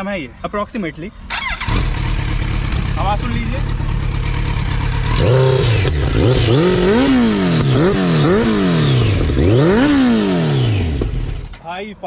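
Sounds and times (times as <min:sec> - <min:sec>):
motorcycle engine revving: 0:01.2 - 0:11.6.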